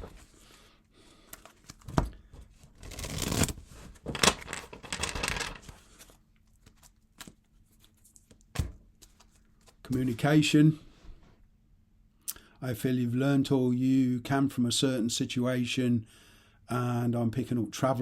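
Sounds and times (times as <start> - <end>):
cards sliding and turning: 1.3 - 8.4.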